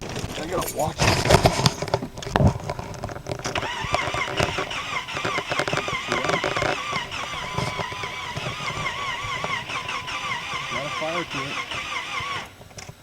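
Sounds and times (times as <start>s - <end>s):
car engine cranking on starter: 3.4s - 12.8s.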